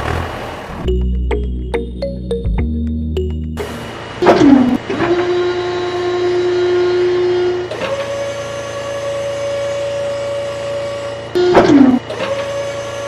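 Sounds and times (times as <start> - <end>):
small electric motor whining: 4.8 - 13.0.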